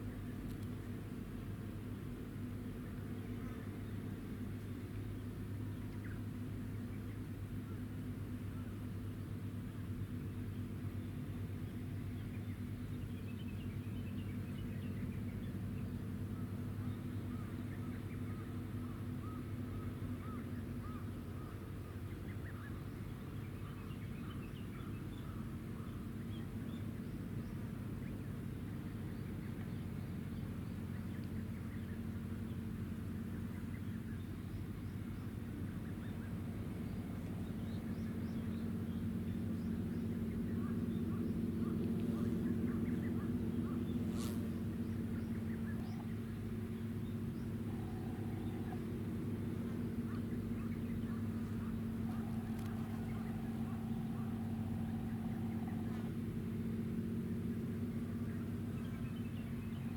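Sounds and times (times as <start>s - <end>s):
ship engines humming: 36.3s - 59.9s.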